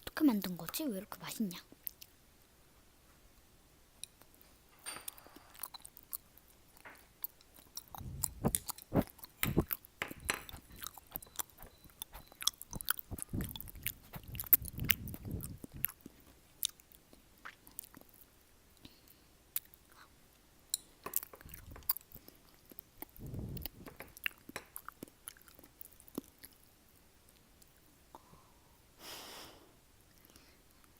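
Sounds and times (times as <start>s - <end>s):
close chewing with mouth clicks: 1.7s - 2.2s, 5.4s - 28.3s, 30.1s - 30.9s.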